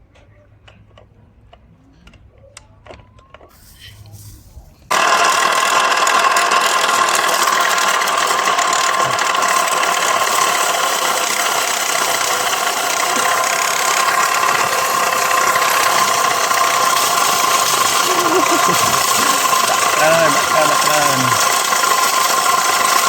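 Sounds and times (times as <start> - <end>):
electric motor whining: 4.9 - 23.0.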